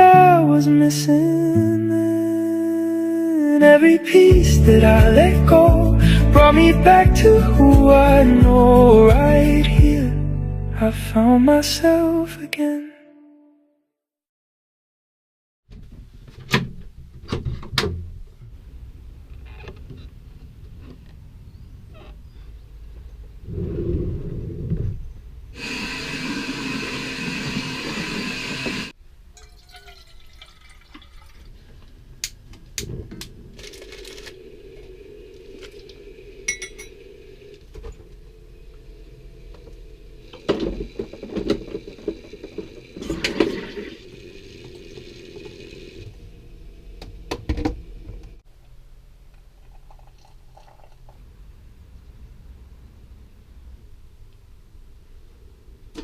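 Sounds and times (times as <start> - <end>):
water running: 25.6 - 32.0, 33.5 - 48.4
low steady hum: 29.0 - 56.0.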